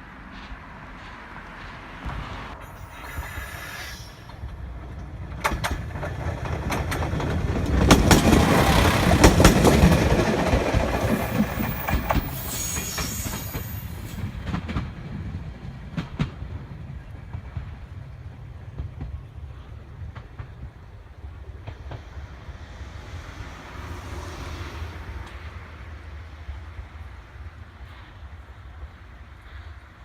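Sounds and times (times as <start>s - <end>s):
steam train passing: 0.0s - 30.0s
wheels clicking over rail joints: 0.2s - 22.6s.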